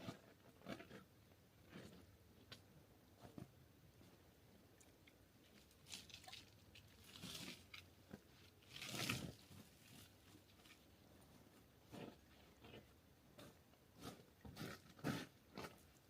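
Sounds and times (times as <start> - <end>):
soft crunching rustles: 5.4 - 16.0.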